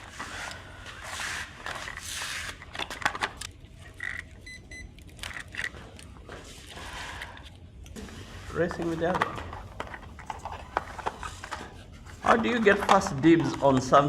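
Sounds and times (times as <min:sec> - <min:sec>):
rustling of handling: 0:05.0 - 0:13.2.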